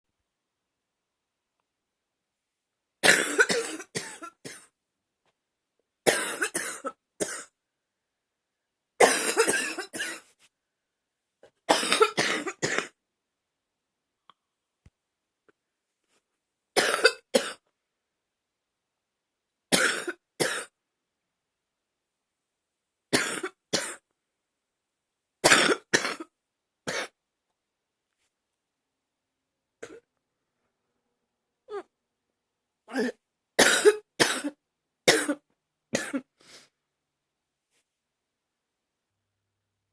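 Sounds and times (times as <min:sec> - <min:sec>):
woman coughing: 0:03.0 - 0:04.7, 0:06.1 - 0:07.5, 0:09.0 - 0:10.2, 0:11.7 - 0:13.0, 0:23.2 - 0:24.0, 0:32.9 - 0:35.4, 0:36.0 - 0:36.3.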